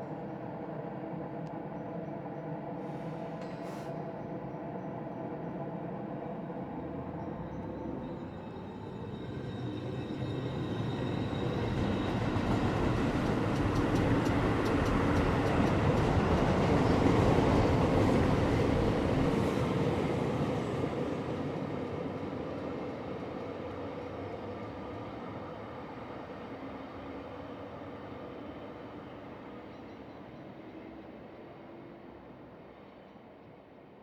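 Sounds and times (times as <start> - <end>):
train wheels rumbling: 9.0 - 21.9.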